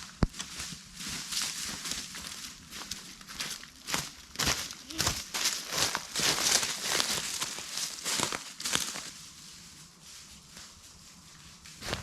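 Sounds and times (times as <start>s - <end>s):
footsteps crunching on woodland floor: 0.0s - 9.2s.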